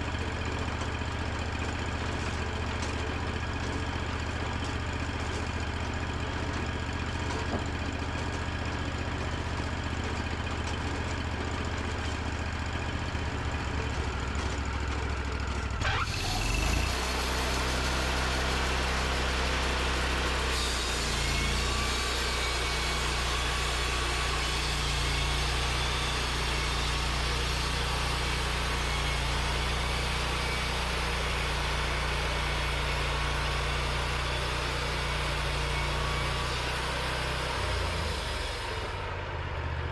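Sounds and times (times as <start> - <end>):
sawmill engine: 0.0 - 39.9
blade sawing through log: 15.8 - 39.1.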